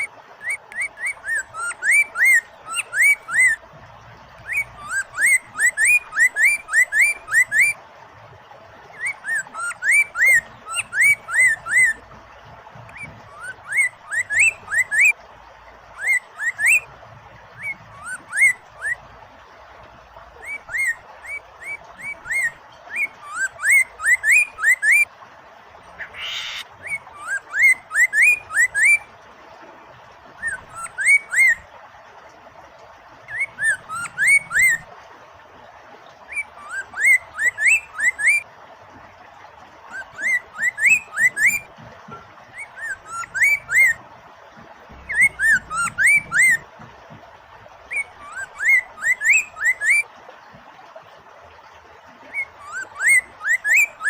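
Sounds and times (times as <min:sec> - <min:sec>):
running water hiss: 0:00.0 - 0:54.0
bird singing whistled notes: 0:00.4 - 0:03.6, 0:04.4 - 0:07.8, 0:09.0 - 0:12.0, 0:12.9 - 0:15.2, 0:16.0 - 0:16.9, 0:20.4 - 0:25.1, 0:26.0 - 0:29.1, 0:30.4 - 0:31.6, 0:33.3 - 0:34.8, 0:36.4 - 0:38.4, 0:39.9 - 0:41.7, 0:42.6 - 0:44.0, 0:45.0 - 0:46.6, 0:47.9 - 0:50.0.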